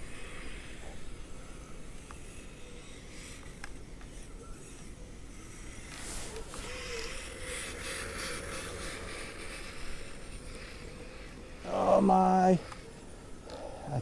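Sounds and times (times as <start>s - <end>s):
electric motor whining: 5.5s - 14.0s.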